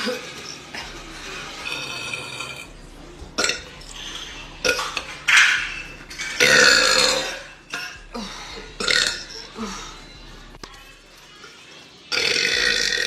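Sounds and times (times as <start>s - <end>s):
woman burping: 6.4s - 10.1s, 12.1s - 13.0s.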